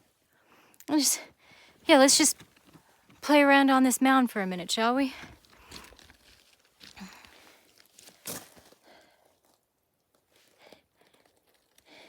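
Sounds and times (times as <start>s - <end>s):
footsteps on loose rock: 5.1s - 8.8s.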